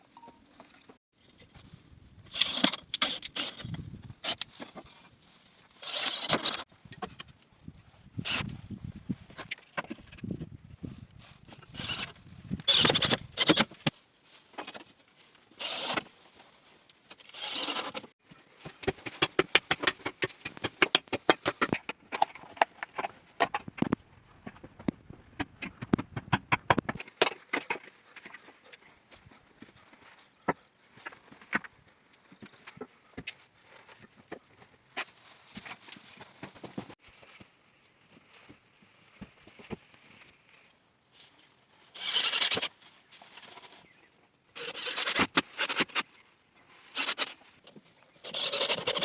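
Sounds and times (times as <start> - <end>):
scraping or rustling: 26.7 - 49.0.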